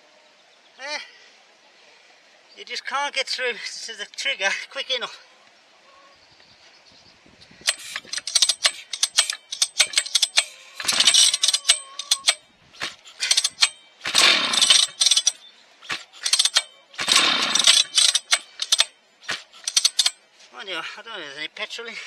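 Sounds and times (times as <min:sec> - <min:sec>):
chainsaw starter cord pulls: 0:07.6 - 0:20.2
engine turning over: 0:07.6 - 0:20.2
rapid clattering and clicks: 0:07.7 - 0:20.2.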